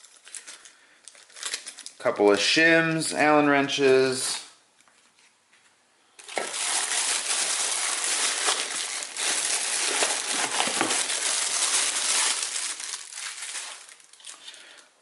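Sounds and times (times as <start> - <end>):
plastic packaging crinkling: 0.0 - 2.0, 6.2 - 14.9.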